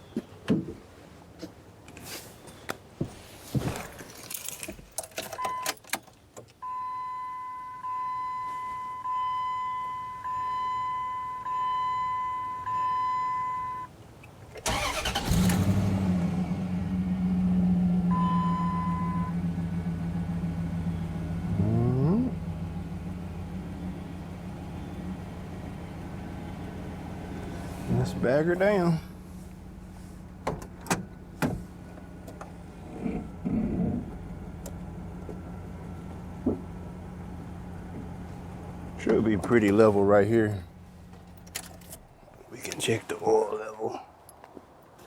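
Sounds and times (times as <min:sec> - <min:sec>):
car warning chime beeping: 0:05.4 - 0:05.8, 0:06.6 - 0:13.9, 0:18.1 - 0:19.4
car engine cranking and starting: 0:14.6 - 0:42.4
car engine idling: 0:14.6 - 0:42.4.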